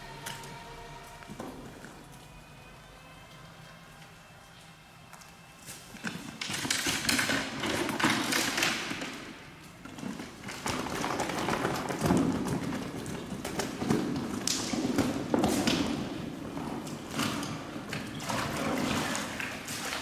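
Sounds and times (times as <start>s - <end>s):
fish thrashing and splashing: 16.8s - 20.0s.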